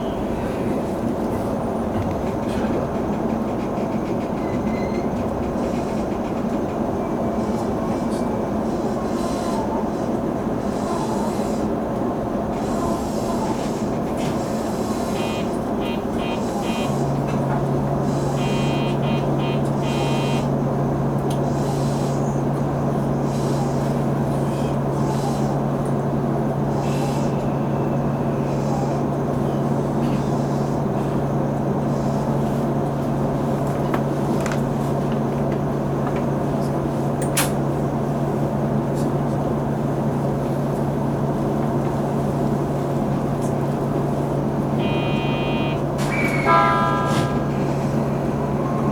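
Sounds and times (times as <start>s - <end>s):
train running noise: 0.0s - 48.9s.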